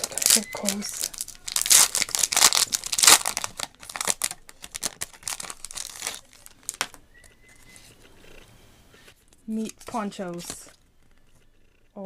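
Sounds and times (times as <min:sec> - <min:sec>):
wrapper being torn and crinkled: 0:00.0 - 0:07.0.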